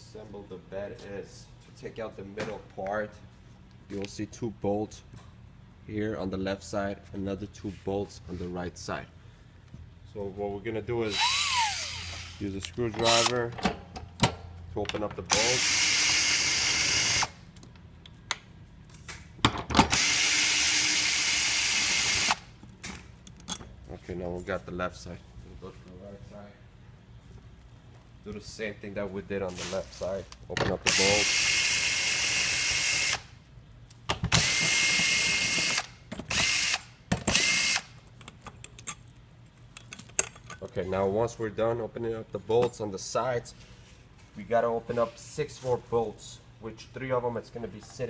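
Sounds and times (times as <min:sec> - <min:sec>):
power screwdriver running: 0:11.1 - 0:12.4, 0:15.4 - 0:17.4, 0:19.9 - 0:22.4, 0:30.9 - 0:33.2, 0:34.4 - 0:37.9.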